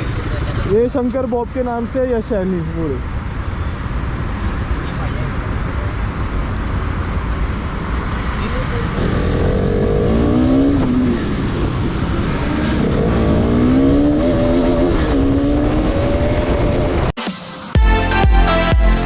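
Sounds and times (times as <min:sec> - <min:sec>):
vehicle engine revving: 0:07.6 - 0:17.2.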